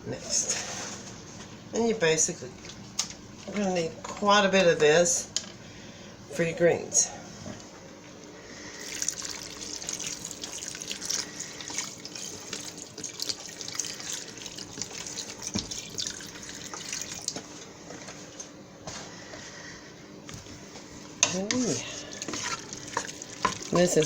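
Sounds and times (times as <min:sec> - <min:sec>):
broth pouring into a pot: 0:08.8 - 0:17.4, 0:22.1 - 0:24.0.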